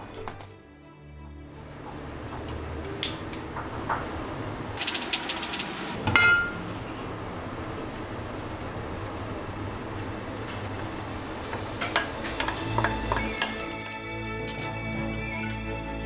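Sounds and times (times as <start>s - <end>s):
cookware clattering: 4.8s - 6.7s, 11.9s - 13.9s
steady hiss: 7.8s - 15.0s.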